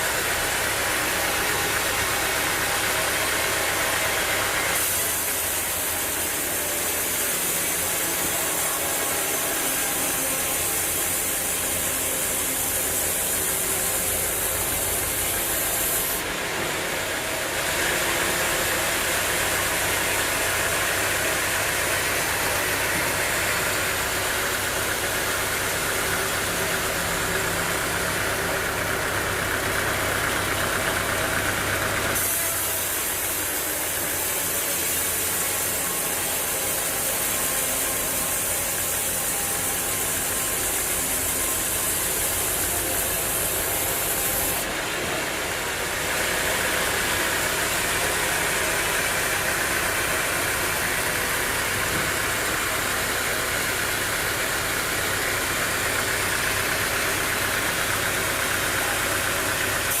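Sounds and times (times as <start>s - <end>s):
sawmill machinery running: 0.0s - 60.0s.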